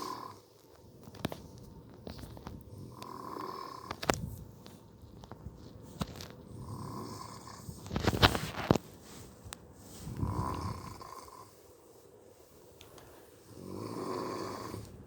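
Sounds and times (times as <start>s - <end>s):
person snoring: 0.0s - 0.4s, 2.9s - 3.9s, 6.6s - 7.7s, 10.1s - 11.6s, 13.5s - 15.0s.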